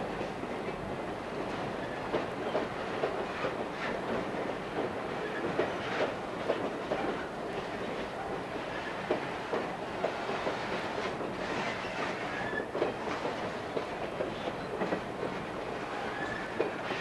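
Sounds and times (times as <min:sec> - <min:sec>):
train rumble: 0:00.0 - 0:17.0.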